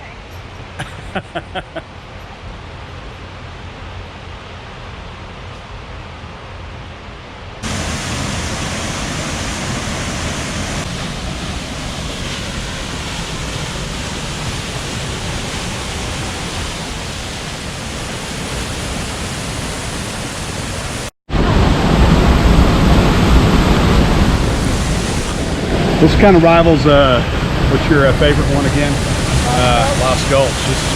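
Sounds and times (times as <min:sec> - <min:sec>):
waterfall rushing: 0:07.6 - 0:30.9.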